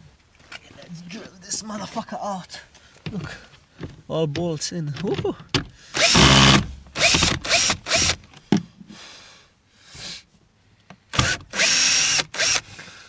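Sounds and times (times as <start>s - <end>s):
power drill bursts: 6.0s - 8.2s, 11.1s - 12.8s.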